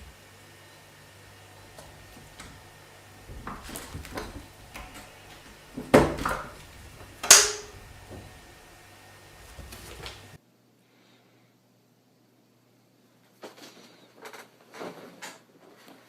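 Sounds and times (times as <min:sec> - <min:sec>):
household objects clattering: 0:01.1 - 0:10.4.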